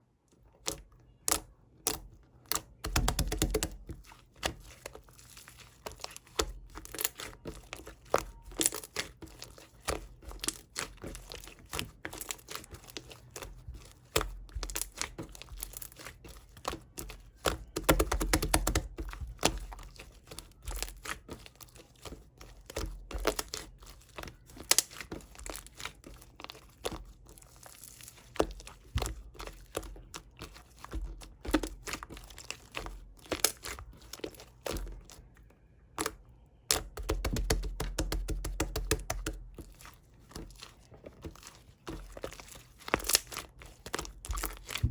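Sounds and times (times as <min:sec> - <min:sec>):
wrapping crinkling and tearing: 0:03.9 - 0:35.2, 0:39.4 - 0:44.9.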